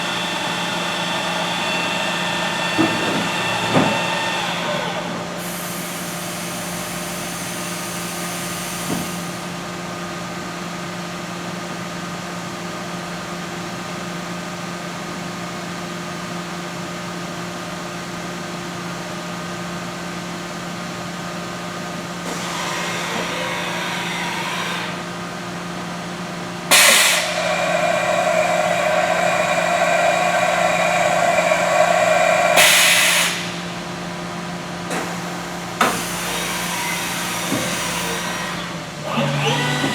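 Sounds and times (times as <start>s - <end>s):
loud machine whirring: 0.0s - 9.6s, 19.6s - 39.9s
hiss: 5.4s - 9.4s, 26.7s - 33.7s
machine hum with tones: 26.7s - 34.2s.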